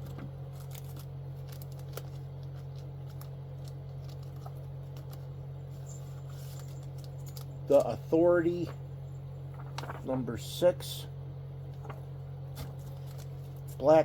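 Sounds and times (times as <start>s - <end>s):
steady low hum: 0.0s - 14.0s
plastic sleeves crinkling: 0.4s - 7.9s, 9.5s - 10.3s, 11.7s - 13.9s.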